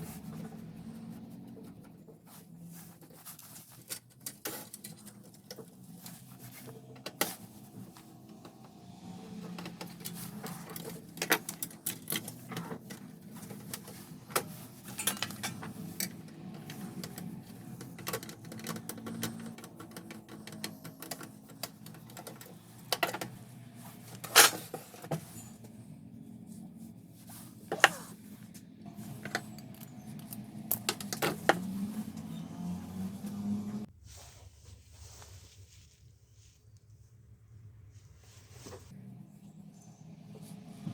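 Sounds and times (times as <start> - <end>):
plastic and metal parts clicking: 9.9 - 23.3.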